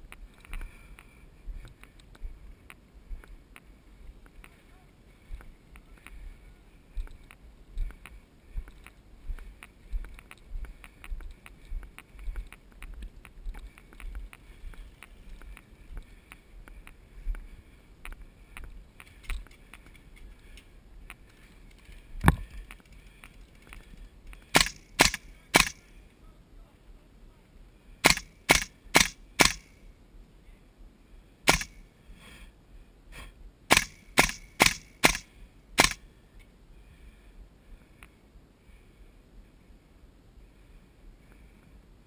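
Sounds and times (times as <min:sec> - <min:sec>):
faint ticks: 0:00.1 - 0:04.6, 0:06.9 - 0:25.8, 0:38.0 - 0:38.2
airsoft gun shots: 0:24.5 - 0:25.8, 0:28.0 - 0:29.7, 0:31.5 - 0:31.8, 0:33.7 - 0:36.0.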